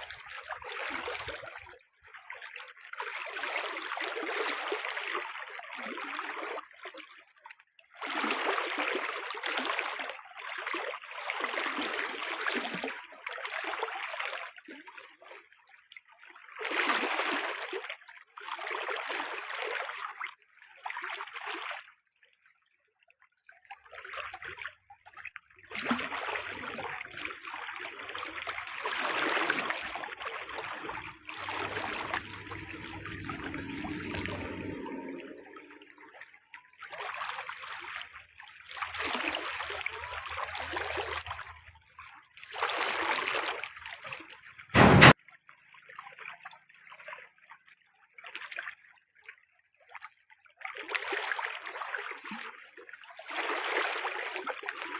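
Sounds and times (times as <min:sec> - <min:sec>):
water pouring and splashing: 0:00.0 - 0:15.6, 0:16.2 - 0:21.9, 0:23.6 - 0:47.5, 0:50.6 - 0:54.9
sharp knock: 0:44.8 - 0:45.2.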